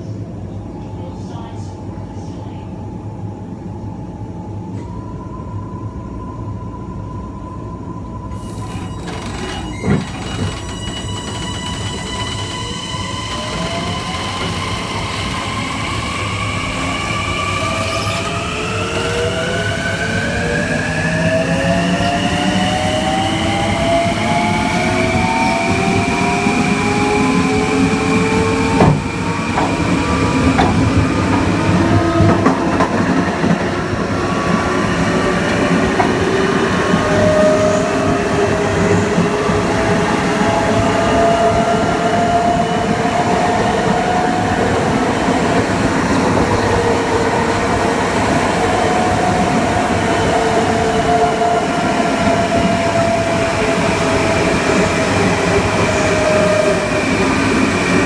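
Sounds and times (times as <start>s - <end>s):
wheel and rail rumble: 8.4s - 15.6s.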